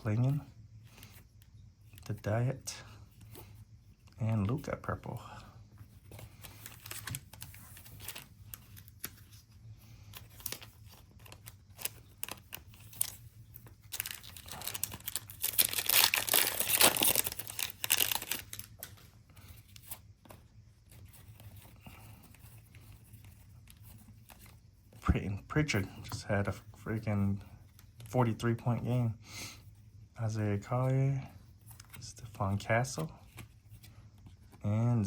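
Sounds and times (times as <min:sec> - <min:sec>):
cards and packaging rustling: 0:03.1 - 0:28.9
foil wrapper tearing and crinkling: 0:13.9 - 0:18.9.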